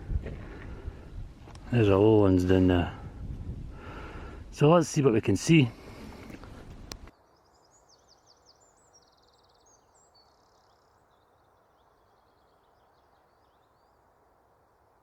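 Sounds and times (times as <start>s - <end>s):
low steady hiss: 0.5s - 15.0s
distant bird chirping and trilling: 5.7s - 15.0s.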